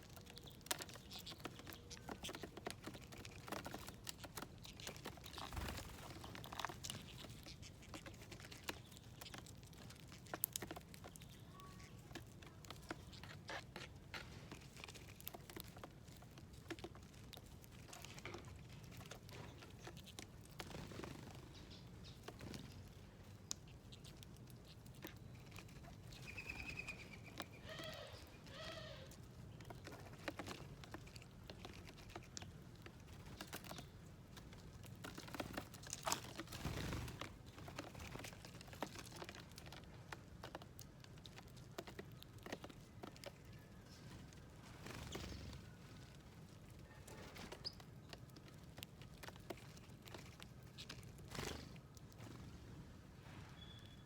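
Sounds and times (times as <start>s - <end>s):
birds chirping: 25.2s - 30.1s.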